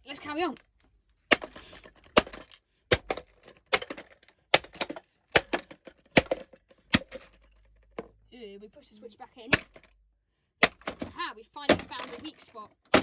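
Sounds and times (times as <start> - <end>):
plastic clicks and clatter: 0.2 - 8.1, 10.6 - 13.0
hammer striking plastic: 1.3 - 8.1, 9.5 - 9.9, 10.6 - 13.0.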